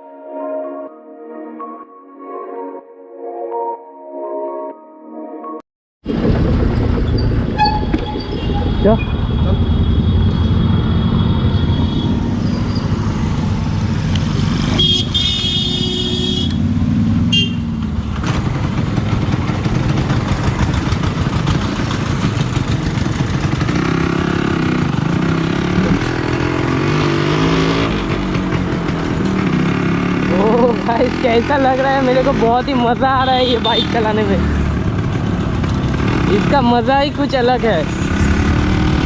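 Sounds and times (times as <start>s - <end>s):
horn honking: 11.1s - 12.8s, 14.6s - 17.8s, 33.2s - 34.2s
two-stroke motorcycle engine running: 16.6s - 39.0s.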